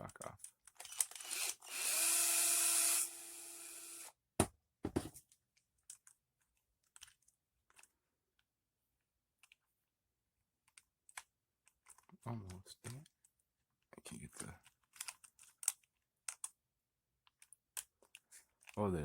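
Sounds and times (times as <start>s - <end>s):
clicks of small parts and screws: 0.0s - 1.8s, 14.3s - 16.6s
small power driver running: 0.9s - 4.1s.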